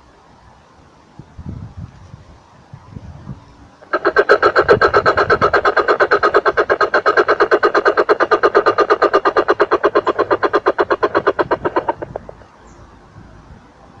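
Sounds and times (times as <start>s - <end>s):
bird calling rapid repeated notes: 3.8s - 12.4s.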